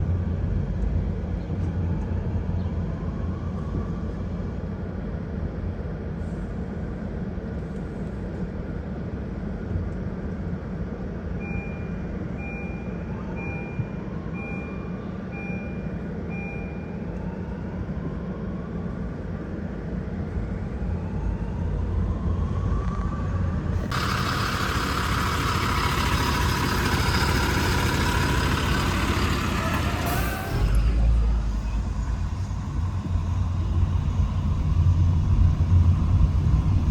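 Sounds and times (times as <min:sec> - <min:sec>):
diesel engine running: 0:23.7 - 0:36.9.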